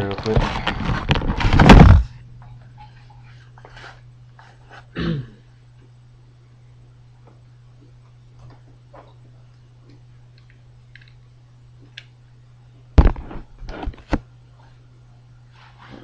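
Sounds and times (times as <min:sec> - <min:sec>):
steady low hum: 0:00.0 - 0:16.0
cable thumps and crackles: 0:00.1 - 0:02.2, 0:13.0 - 0:14.3.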